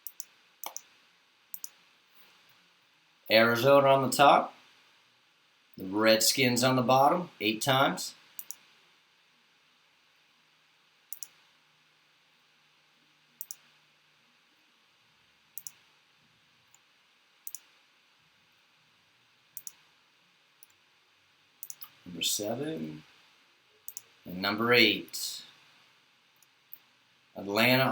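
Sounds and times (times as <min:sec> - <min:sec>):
computer mouse clicks: 0:00.0 - 0:00.9, 0:01.5 - 0:01.8, 0:08.4 - 0:08.7, 0:11.1 - 0:11.4, 0:13.4 - 0:13.7, 0:15.6 - 0:15.9, 0:16.7 - 0:17.8, 0:19.6 - 0:19.9, 0:21.6 - 0:22.0, 0:23.9 - 0:24.1.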